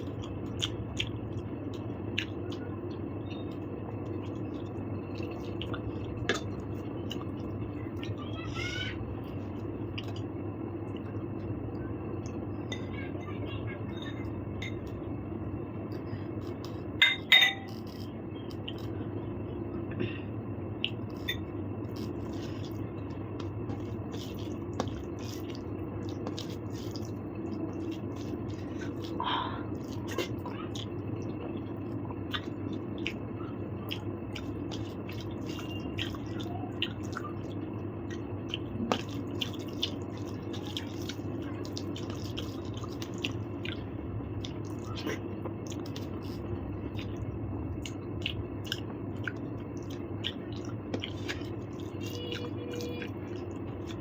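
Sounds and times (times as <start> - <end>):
wet mouth eating sounds: 0.0 - 8.2, 9.2 - 11.6, 15.8 - 17.0, 17.6 - 19.0, 20.8 - 54.0
steady background hum: 0.0 - 54.0
sharp utensil clink: 17.0 - 17.7.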